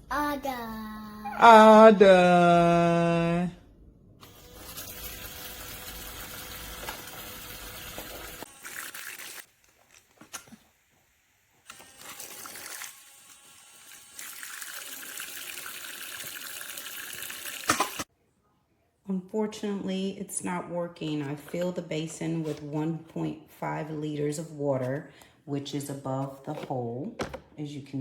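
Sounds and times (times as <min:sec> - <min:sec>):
water running from small faucet: 0:04.7 - 0:09.5, 0:12.0 - 0:18.1.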